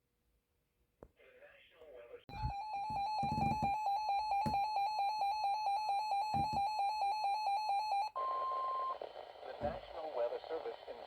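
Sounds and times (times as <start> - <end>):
low thumps: 2.3 - 4.8, 6.2 - 6.7.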